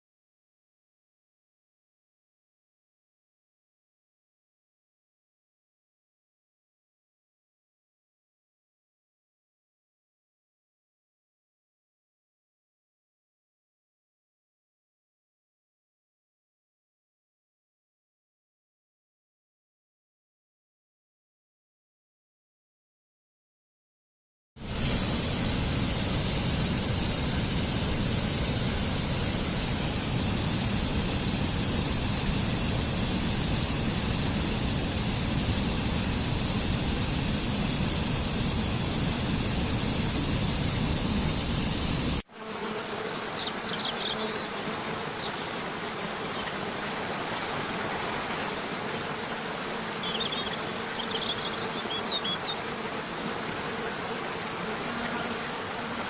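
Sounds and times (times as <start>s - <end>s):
high insect buzzing hiss: 24.6s - 56.0s.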